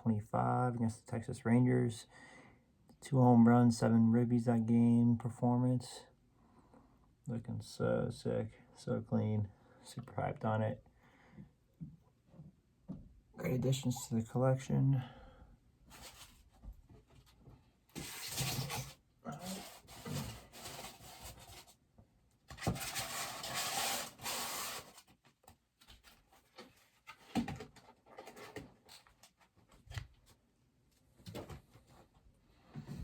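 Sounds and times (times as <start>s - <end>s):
packaging rubbing and scraping: 18.0s - 21.8s, 22.6s - 25.1s.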